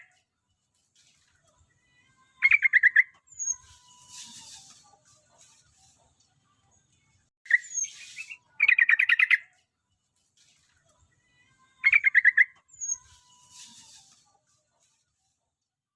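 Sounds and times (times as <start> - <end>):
soft bird chirps: 7.5 - 9.6, 11.6 - 14.4.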